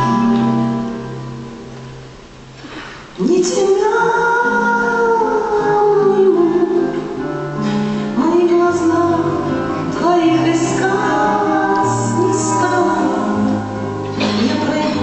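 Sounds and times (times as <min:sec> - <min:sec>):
instrumental backing with bass: 0:00.0 - 0:02.8
woman singing slow song: 0:03.2 - 0:15.0.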